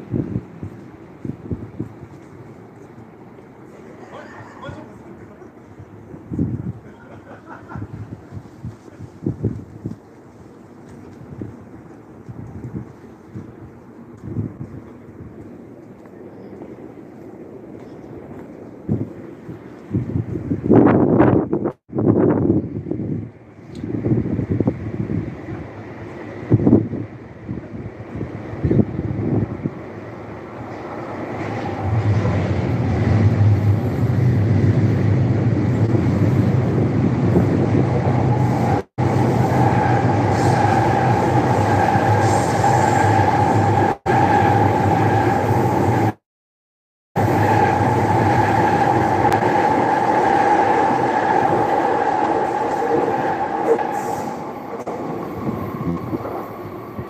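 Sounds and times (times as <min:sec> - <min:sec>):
train passing: 0:22.9 - 0:46.2, 0:47.2 - 0:57.0.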